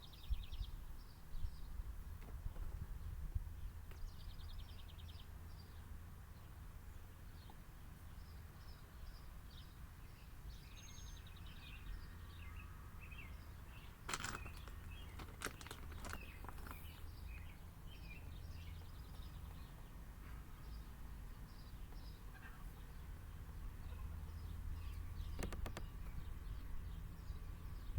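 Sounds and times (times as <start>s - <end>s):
small birds chirping: 0.0s - 27.9s
low outdoor rumble: 0.4s - 27.9s
sharp clicks: 25.3s - 26.0s.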